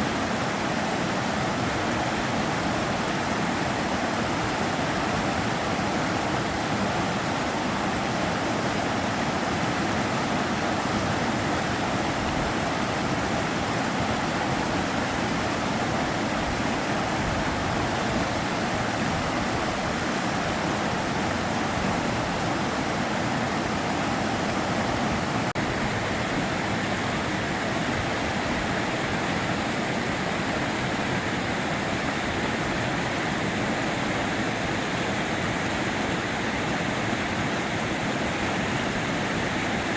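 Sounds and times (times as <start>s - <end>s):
water rushing over rocks: 0.0s - 39.9s.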